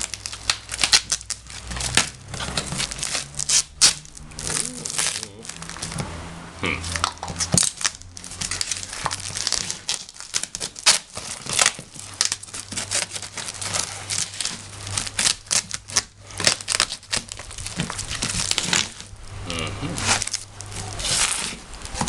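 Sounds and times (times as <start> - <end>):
packaging crinkling and rustling: 0.0 - 22.0.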